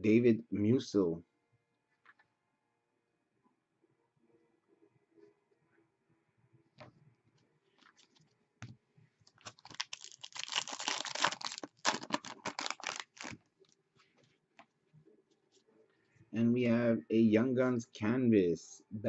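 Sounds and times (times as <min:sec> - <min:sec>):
trading cards rustling and clicking: 0:09.3 - 0:13.4.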